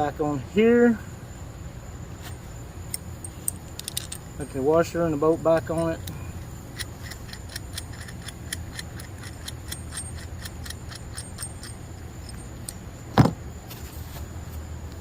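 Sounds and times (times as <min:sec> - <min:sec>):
ratchet wrench clicking: 0:02.9 - 0:04.6, 0:05.6 - 0:12.8.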